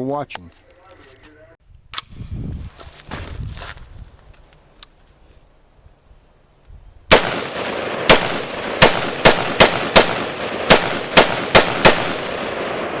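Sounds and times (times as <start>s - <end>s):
loud sharp bangs: 7.1s - 13.0s.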